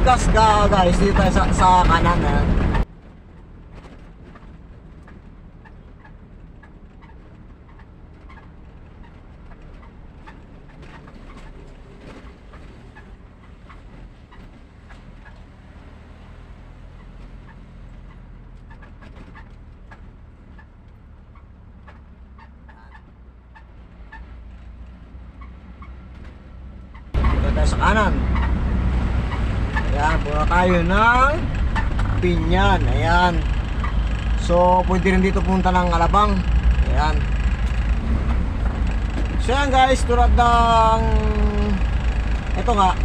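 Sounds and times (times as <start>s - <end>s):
car rumbling on the move: 0.0s - 43.0s.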